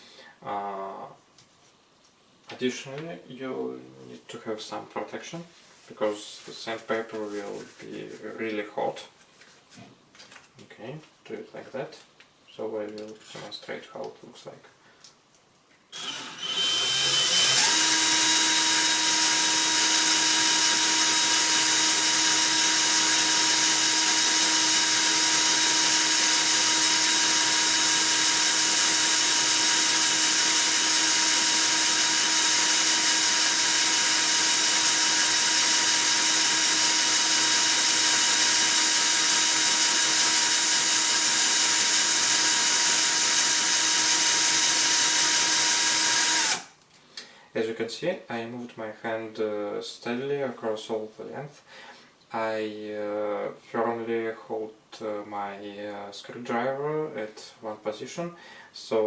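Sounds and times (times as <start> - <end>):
electric screwdriver motor whine: 16.0 - 46.7.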